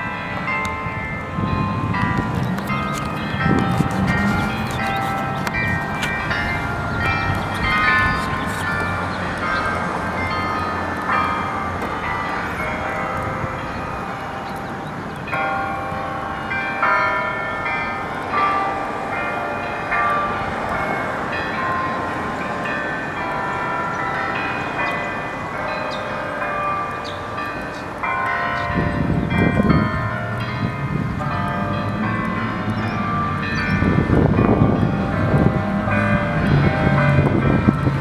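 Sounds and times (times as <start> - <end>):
church bells chiming a tune: 0.0 - 38.0.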